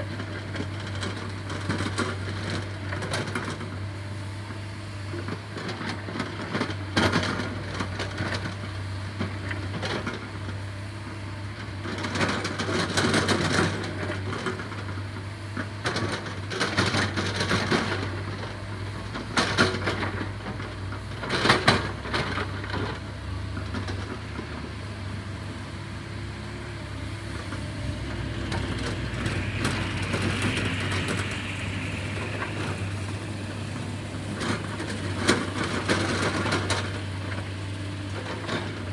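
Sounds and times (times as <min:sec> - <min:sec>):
excavator engine humming: 0:24.6 - 0:38.9.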